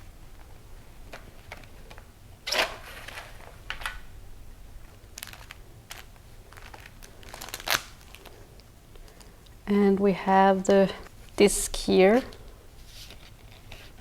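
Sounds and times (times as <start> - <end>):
packaging rustling and clicking: 5.2 - 9.3.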